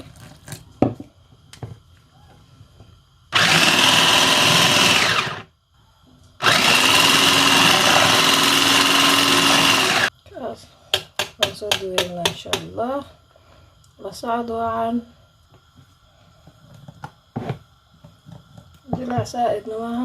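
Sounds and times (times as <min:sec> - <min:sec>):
electric blender motor: 0:03.3 - 0:05.5, 0:06.4 - 0:10.1.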